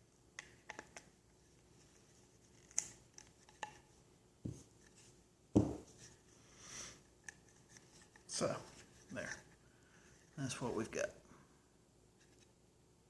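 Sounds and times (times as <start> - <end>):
dull thump: 5.6 - 5.8.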